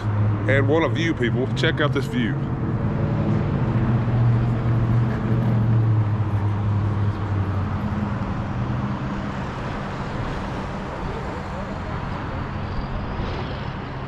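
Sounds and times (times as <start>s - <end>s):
city street traffic: 0.0s - 14.0s
vehicle engine humming: 0.0s - 14.0s.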